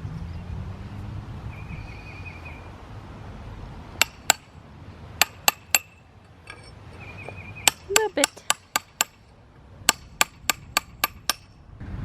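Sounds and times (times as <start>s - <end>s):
hammer tapping steel chisel: 4.0s - 4.5s, 5.2s - 9.2s, 9.9s - 11.5s.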